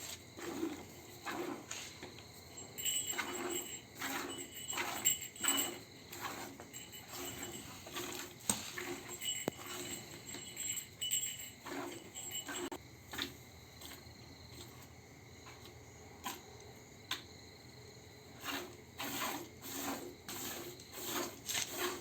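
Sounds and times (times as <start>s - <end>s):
milk squirting into metal pail: 0.4s - 2.2s, 3.1s - 9.9s.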